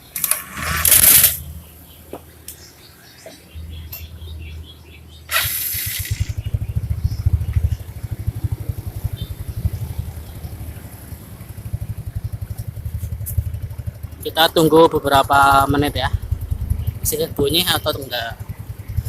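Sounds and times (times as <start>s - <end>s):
scooter engine idling: 0.0s - 19.0s
loud hissing burst: 5.3s - 6.5s.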